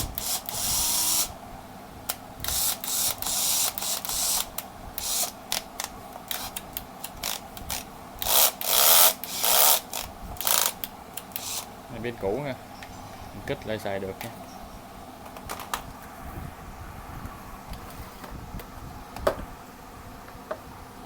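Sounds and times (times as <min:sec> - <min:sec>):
cordless drill running in bursts: 0:00.0 - 0:01.3, 0:02.4 - 0:05.4, 0:07.2 - 0:11.7.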